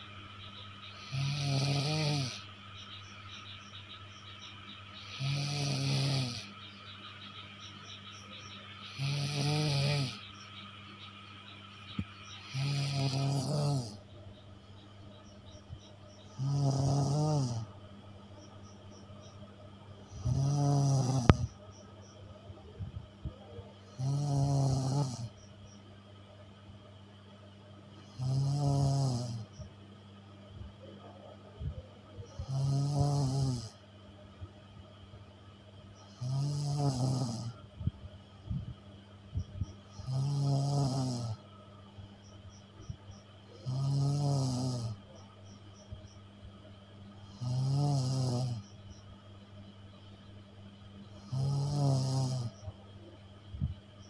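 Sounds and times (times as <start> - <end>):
person snoring: 1.0 - 2.4, 5.0 - 6.5, 8.9 - 10.2, 12.4 - 14.0, 16.3 - 17.7, 20.1 - 21.5, 23.8 - 25.3, 28.1 - 29.5, 32.4 - 33.8, 36.1 - 37.6, 40.0 - 41.4, 43.6 - 45.1, 47.2 - 48.7, 51.2 - 52.7.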